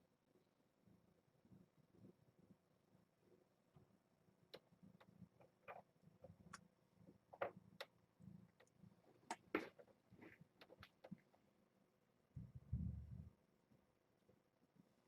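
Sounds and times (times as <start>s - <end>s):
faint clicks and light taps: 3.3s - 11.5s.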